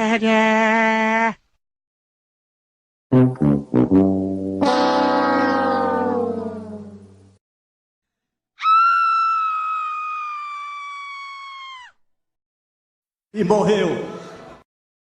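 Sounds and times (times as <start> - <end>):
brass note: 3.1 - 7.4
high-pitched scream: 4.7 - 7.1, 8.6 - 12.0.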